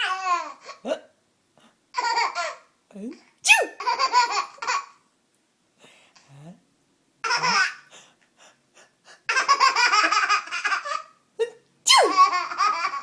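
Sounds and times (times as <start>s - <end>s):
baby laughing: 0.0s - 0.8s, 2.0s - 2.7s, 3.8s - 5.0s, 7.2s - 7.9s, 9.3s - 11.2s, 11.9s - 13.0s.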